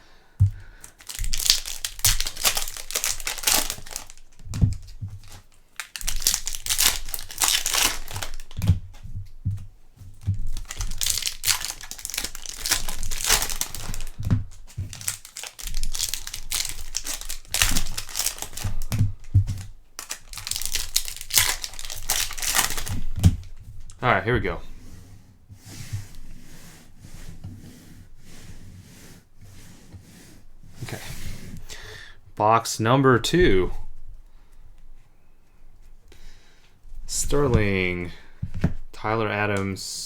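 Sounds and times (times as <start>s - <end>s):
packaging crinkling and tearing: 0.8s - 9.0s, 10.2s - 24.0s.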